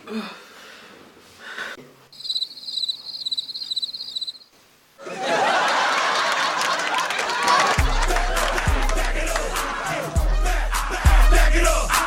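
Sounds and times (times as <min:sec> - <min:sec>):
crickets chirping: 0:02.1 - 0:04.6
crowd noise: 0:05.0 - 0:11.6
music: 0:07.8 - 0:12.0.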